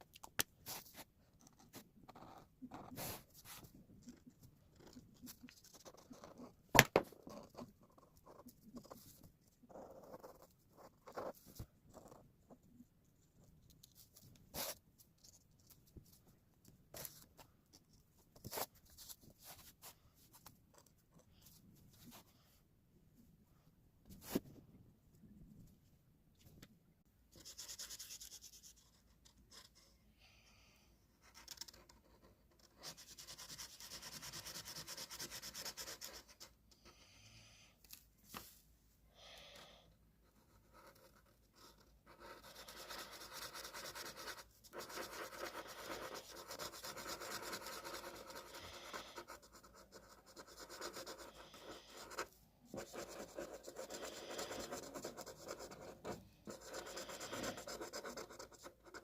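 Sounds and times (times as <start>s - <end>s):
drawing tool scratching on paper: 0.7s - 12.2s, 27.4s - 29.8s, 31.2s - 37.0s, 40.2s - 59.0s.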